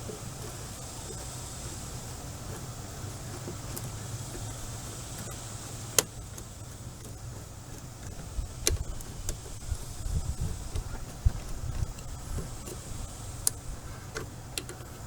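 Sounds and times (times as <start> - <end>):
steady low hum: 0.0 - 15.0
sharp metallic clicks: 3.6 - 15.0.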